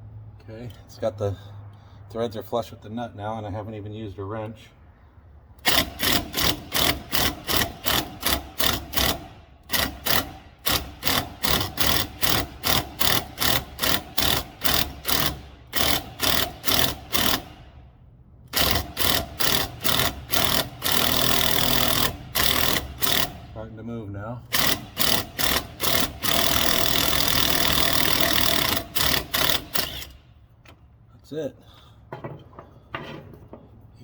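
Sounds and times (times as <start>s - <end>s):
impact wrench hammering: 5.6s - 17.8s, 18.5s - 23.6s, 24.5s - 30.8s.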